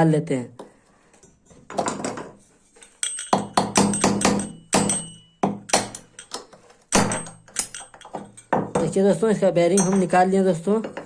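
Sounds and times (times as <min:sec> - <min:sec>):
hammer striking metal: 0:03.0 - 0:08.9.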